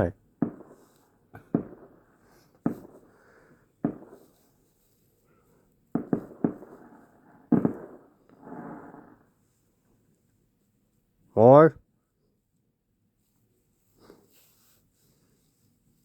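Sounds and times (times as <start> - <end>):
distant fireworks booming: 0.4 - 4.4, 6.0 - 9.3.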